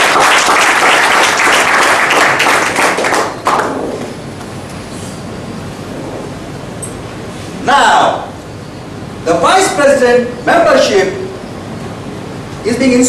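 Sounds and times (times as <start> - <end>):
audience applauding: 0.0 - 3.8.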